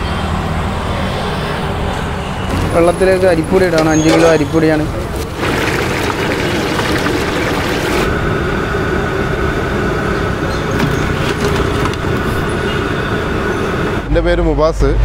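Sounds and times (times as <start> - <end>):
loud roadside traffic: 0.0 - 15.0.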